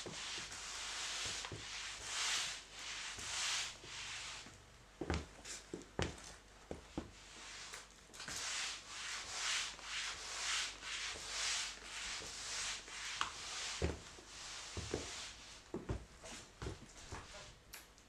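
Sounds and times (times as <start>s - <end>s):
mop swishing on hard floor: 0.0s - 17.6s.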